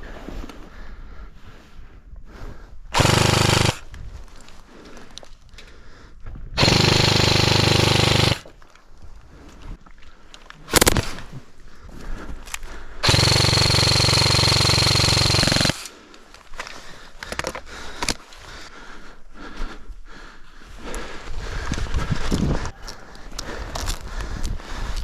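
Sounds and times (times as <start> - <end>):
airsoft gun full-auto bursts: 3.0 - 3.8, 6.6 - 8.5, 13.0 - 16.0.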